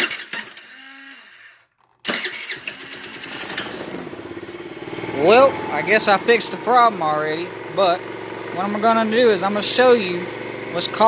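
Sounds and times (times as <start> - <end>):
scooter starter cranking: 0.0 - 11.0
scooter engine running: 1.8 - 11.0.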